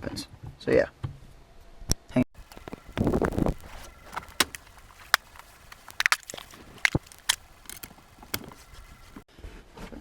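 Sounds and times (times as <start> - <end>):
hand tools clicking on metal: 2.4 - 9.2.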